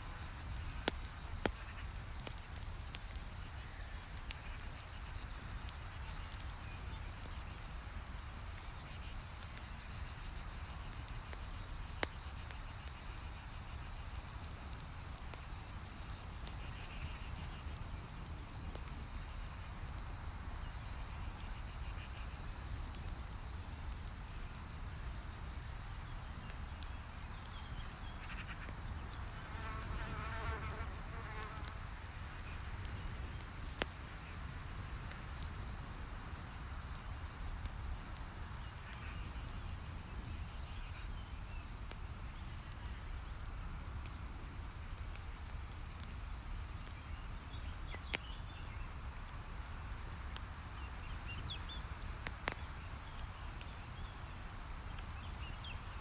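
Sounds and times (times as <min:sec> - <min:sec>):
campfire crackling and popping: 0:00.0 - 0:56.0
fly buzzing: 0:29.4 - 0:31.8.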